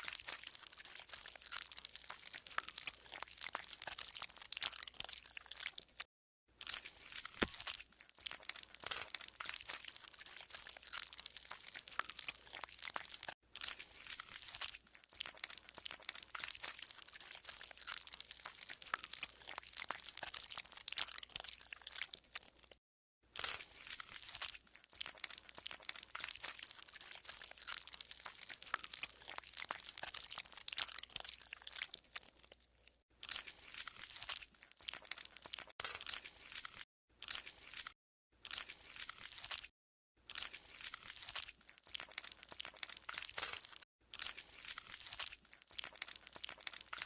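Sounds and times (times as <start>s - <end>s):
slime squelching by hand: 0.0s - 22.6s, 33.2s - 43.4s, 44.1s - 47.0s.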